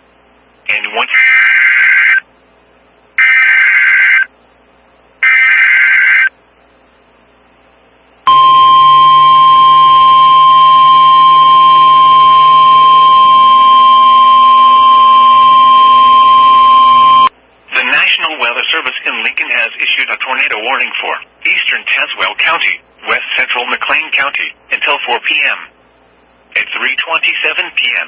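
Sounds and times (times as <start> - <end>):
steady warning alarm tone: 3.2 - 4.3, 5.2 - 6.3, 8.3 - 17.3.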